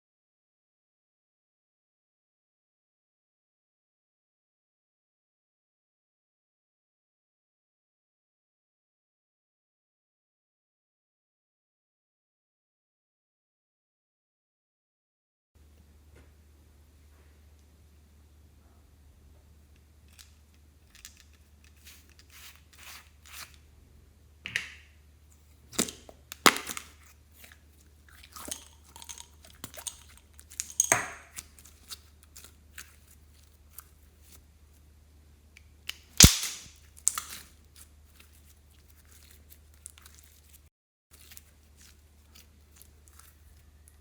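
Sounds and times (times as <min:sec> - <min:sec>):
slime squishing and popping: 0:36.2 - 0:37.5.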